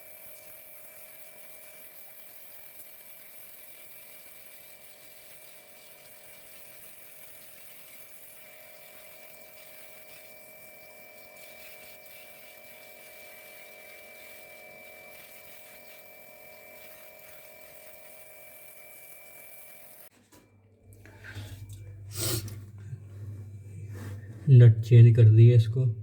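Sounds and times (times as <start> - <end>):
pressure washer pump whining: 0.0 - 20.1
spray hissing: 0.0 - 20.1, 22.1 - 22.6.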